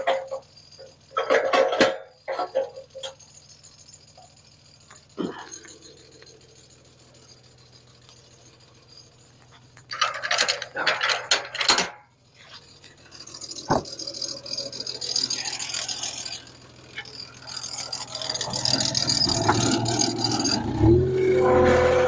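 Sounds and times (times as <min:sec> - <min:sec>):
engine running: 0:00.0 - 0:22.0
sawmill whirring and rasping: 0:00.0 - 0:22.0
knocks: 0:13.7 - 0:13.9.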